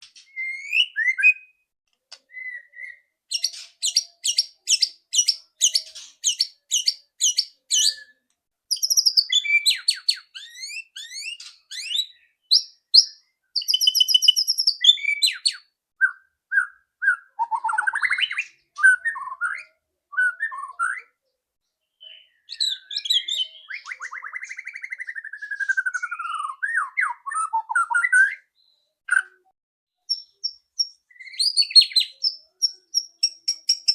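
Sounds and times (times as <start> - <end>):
bird whistling: 0.2 - 1.6, 2.3 - 21.2, 22.0 - 29.4, 30.1 - 33.9
bird singing rattling notes: 3.3 - 8.1.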